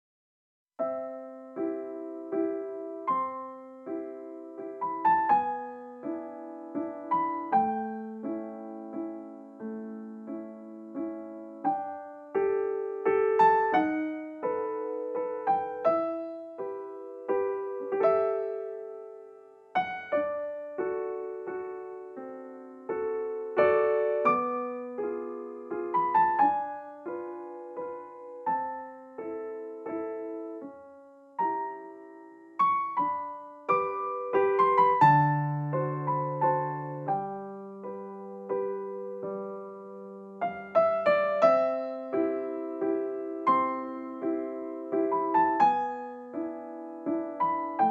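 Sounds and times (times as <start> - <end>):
gentle piano music: 0.8 - 47.9.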